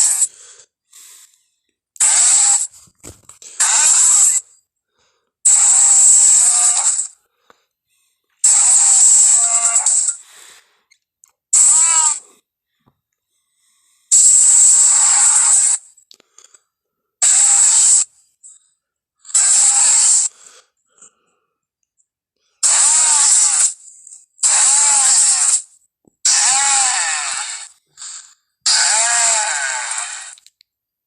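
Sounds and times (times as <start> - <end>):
breathy hissing creature bellows: 26.3 - 28.1, 28.7 - 30.4.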